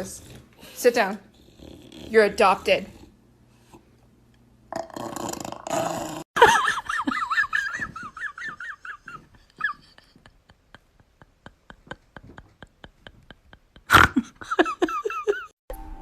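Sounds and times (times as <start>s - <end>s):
dog grumbling: 0.0s - 3.2s.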